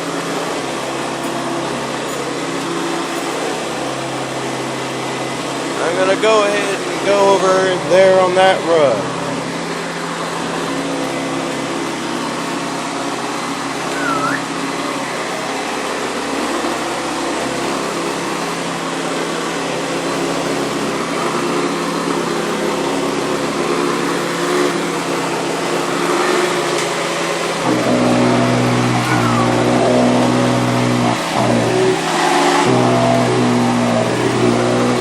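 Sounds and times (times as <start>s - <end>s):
vacuum cleaner running: 0.0s - 35.0s
short high chirp: 13.9s - 14.5s.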